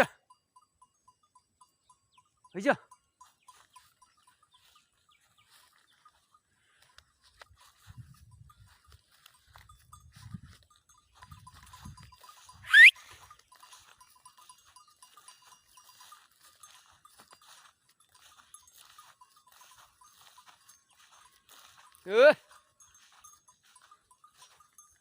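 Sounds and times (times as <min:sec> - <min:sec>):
rising whistle: 0:12.6 - 0:13.1.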